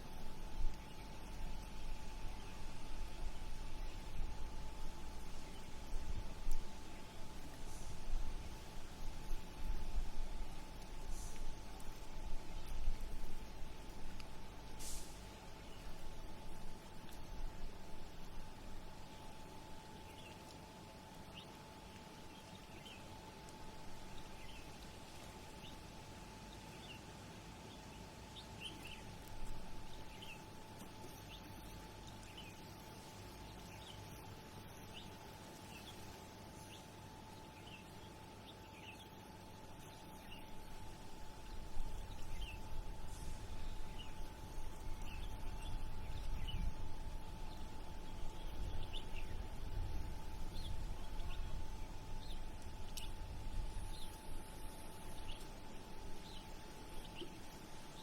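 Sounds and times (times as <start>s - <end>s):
faint constant hum: 0.0s - 58.0s
low city rumble: 0.0s - 58.0s
small birds chirping: 0.0s - 58.0s.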